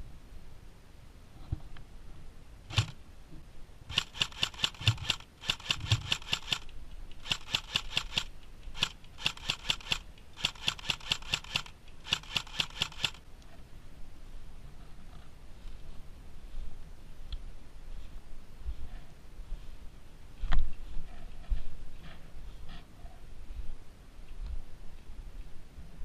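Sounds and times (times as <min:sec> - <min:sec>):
airsoft gun firing: 0:02.7 - 0:03.0, 0:03.9 - 0:13.2.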